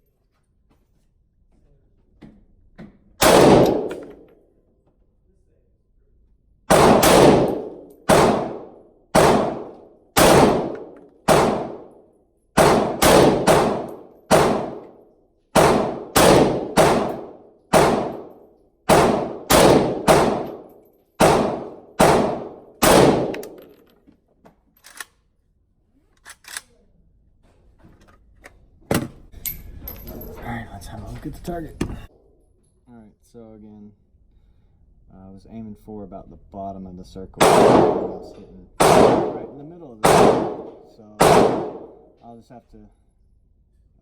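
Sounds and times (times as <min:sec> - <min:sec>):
rifle gunshots: 0:03.2 - 0:04.2, 0:06.7 - 0:11.9, 0:12.6 - 0:15.0, 0:15.6 - 0:23.7, 0:37.4 - 0:42.1.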